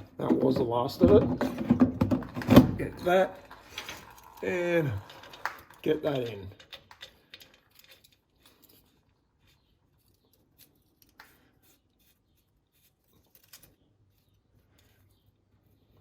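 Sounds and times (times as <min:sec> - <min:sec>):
small metallic clicks and scrapes: 0:05.0 - 0:16.0.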